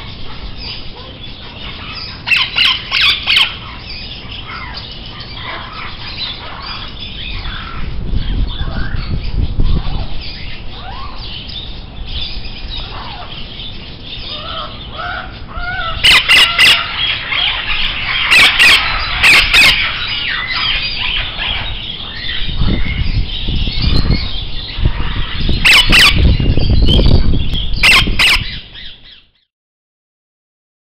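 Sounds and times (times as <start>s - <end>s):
birds chirping and squawking: 0.0s - 29.4s.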